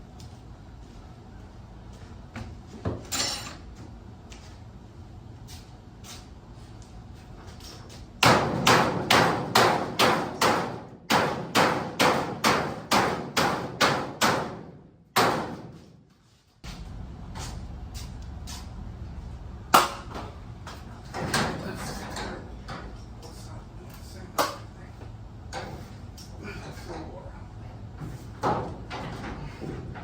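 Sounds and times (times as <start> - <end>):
loud knock: 8.2 - 15.7
hammer striking metal: 19.7 - 20.3.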